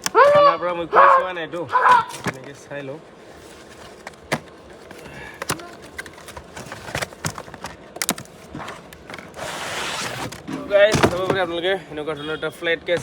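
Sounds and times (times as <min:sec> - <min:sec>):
box packaging clicks and knocks: 0:01.9 - 0:02.6, 0:03.9 - 0:09.4, 0:10.1 - 0:11.6.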